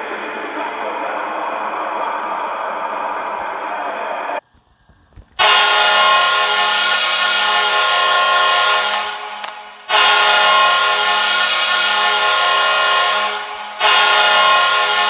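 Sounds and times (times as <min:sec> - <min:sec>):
hockey goal horn blasting: 0:05.4 - 0:15.0.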